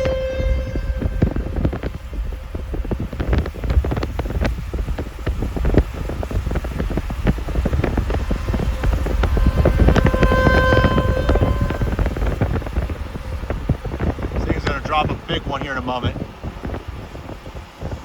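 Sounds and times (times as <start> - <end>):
wind buffeting microphone: 0.0 - 18.0
steady tone with overtones: 7.3 - 13.5.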